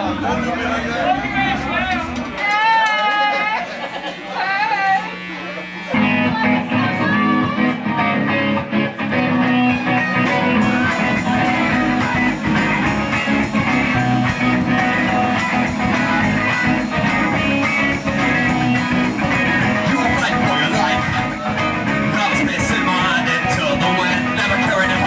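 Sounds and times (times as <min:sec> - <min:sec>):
electric guitar: 0:00.0 - 0:25.0
punk rock band playing: 0:05.0 - 0:25.0.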